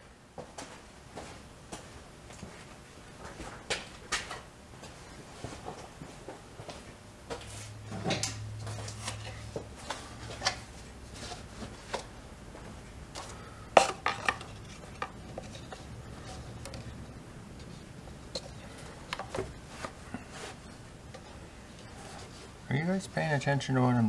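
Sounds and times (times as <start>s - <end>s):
low steady hum: 0.0s - 24.0s
tools clinking and knocking: 13.8s - 17.0s.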